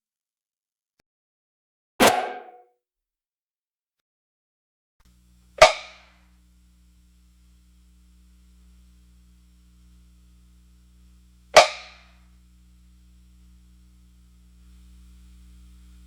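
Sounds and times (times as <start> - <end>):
sharp hit sound effect: 2.0 - 2.6
faint low hum: 5.1 - 16.0.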